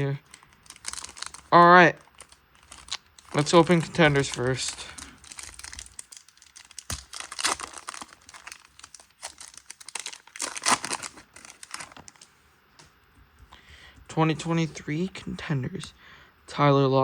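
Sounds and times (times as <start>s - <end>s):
card pack wrapper tearing: 0.0s - 12.2s.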